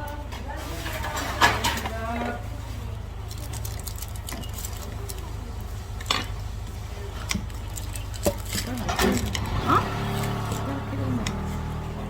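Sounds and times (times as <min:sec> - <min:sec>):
clicks of utensils and dishes: 0:00.0 - 0:02.0.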